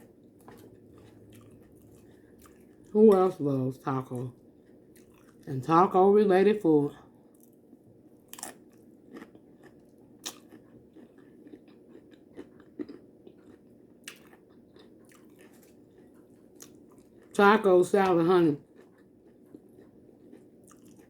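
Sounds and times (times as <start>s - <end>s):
person chewing: 0.0s - 3.3s, 4.0s - 5.6s, 7.3s - 17.3s, 18.0s - 21.0s
chips crunching: 8.3s - 17.3s.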